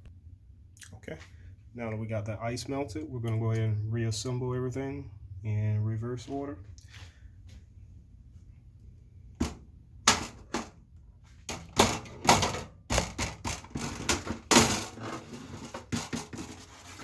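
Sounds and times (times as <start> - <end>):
refrigerator parts clicking: 9.4 - 10.8, 11.5 - 16.6.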